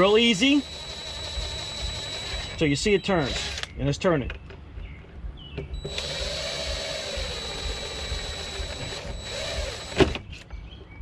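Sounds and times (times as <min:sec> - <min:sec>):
power drill whining: 0:00.0 - 0:03.7, 0:05.8 - 0:10.2.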